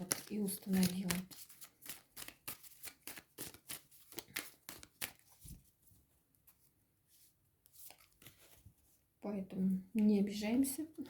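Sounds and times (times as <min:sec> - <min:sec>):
cards being shuffled: 0:00.0 - 0:05.7, 0:07.7 - 0:08.6
faint card handling sounds: 0:00.0 - 0:09.0.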